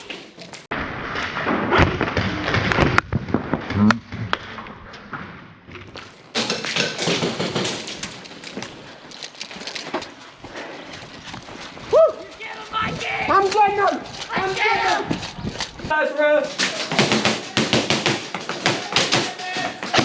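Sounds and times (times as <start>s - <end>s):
thuds of players moving: 9.8s - 20.0s
airsoft guns firing: 16.6s - 20.0s.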